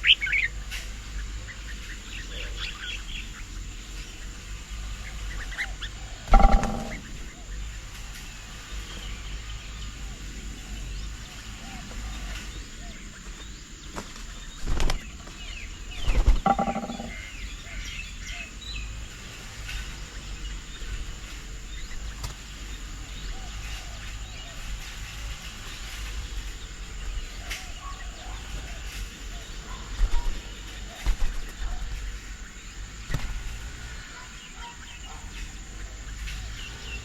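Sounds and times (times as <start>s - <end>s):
birds chirping and calling: 0.0s - 37.0s
sudden loud sound: 6.3s - 7.2s.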